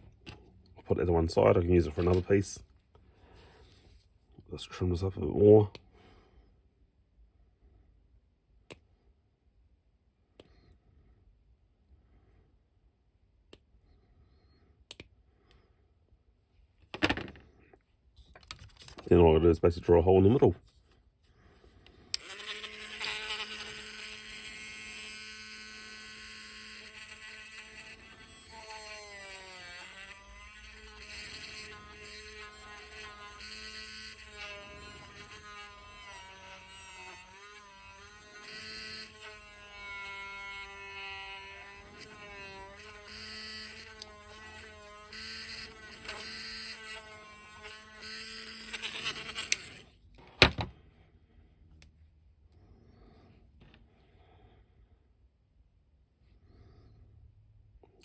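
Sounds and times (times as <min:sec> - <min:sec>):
electric drill drilling plastic: 0:22.2 - 0:50.0.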